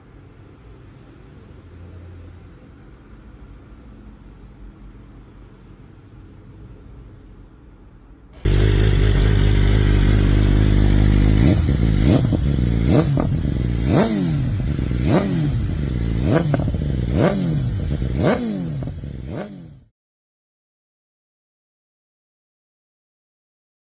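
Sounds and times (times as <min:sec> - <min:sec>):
motorcycle engine idling and revving: 0:08.4 - 0:19.9.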